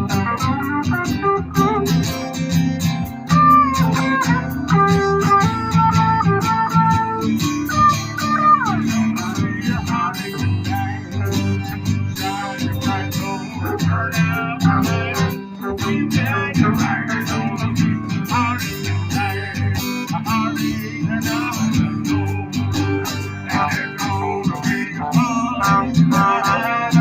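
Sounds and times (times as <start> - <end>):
acoustic guitars strumming: 0.0 - 27.0
bass line: 0.0 - 27.0
wavering lead melody: 0.0 - 27.0.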